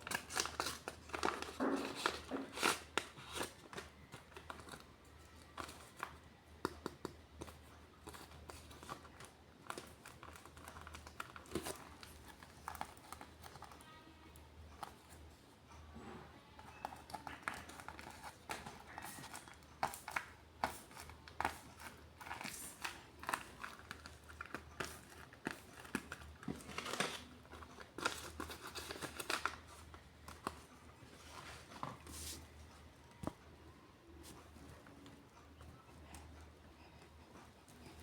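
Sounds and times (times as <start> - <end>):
paper crinkling and rustling: 0.0 - 6.8, 7.4 - 13.8, 16.6 - 33.4.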